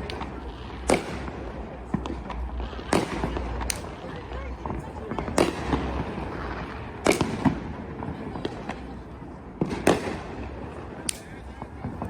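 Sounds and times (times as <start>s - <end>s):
sharp firework bangs: 0.0s - 8.9s, 9.6s - 12.0s
distant firework bursts: 0.0s - 12.0s.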